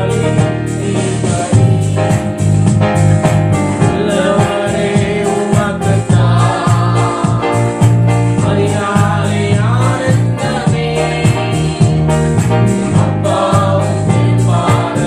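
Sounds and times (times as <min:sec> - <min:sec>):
worship song singing: 0:00.0 - 0:02.5, 0:03.7 - 0:15.0
strong bass line: 0:00.0 - 0:15.0.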